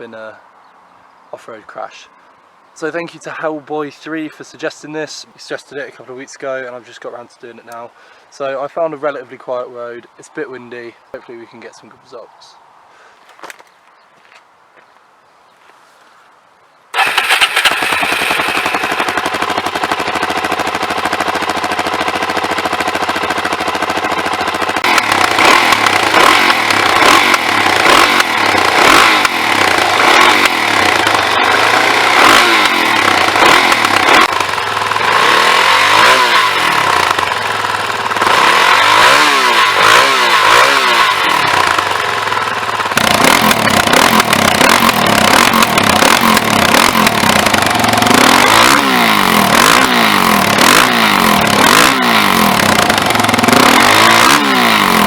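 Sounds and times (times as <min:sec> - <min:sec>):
motorcycle engine revving: 0:16.9 - 0:55.0.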